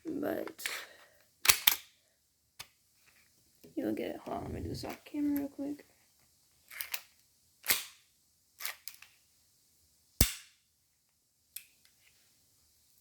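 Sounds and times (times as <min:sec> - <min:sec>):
pistol slide clacks: 0:01.4 - 0:01.9.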